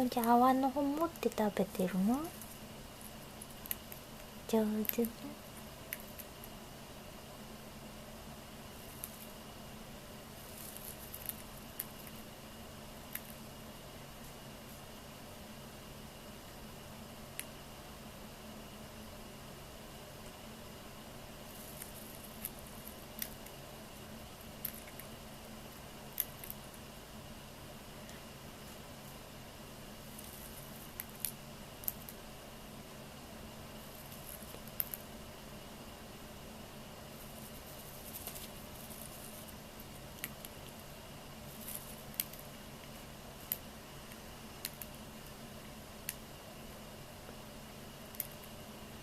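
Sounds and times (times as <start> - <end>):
faint steady hum: 0.0 - 49.0
bird cracking seeds: 8.7 - 9.4, 10.3 - 12.3, 21.5 - 23.6, 34.0 - 35.1, 37.2 - 40.8, 41.4 - 45.4.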